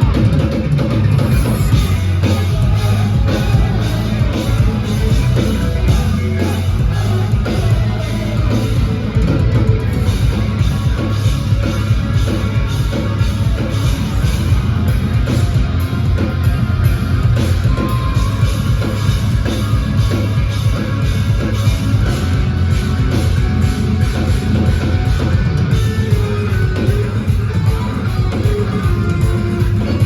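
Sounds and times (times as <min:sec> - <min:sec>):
drum kit: 0:00.0 - 0:30.0
heavy electric guitars: 0:00.0 - 0:30.0.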